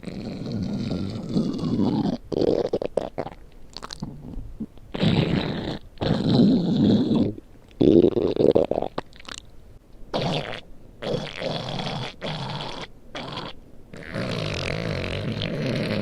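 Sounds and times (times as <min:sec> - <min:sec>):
stomach growling: 0:10.2 - 0:16.0.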